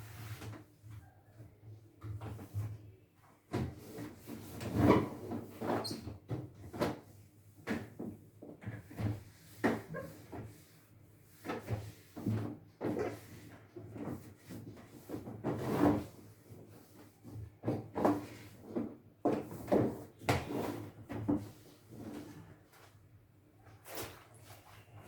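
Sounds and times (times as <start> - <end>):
knocks and clatters in refrigerator: 3.5 - 10.6, 17.2 - 22.3.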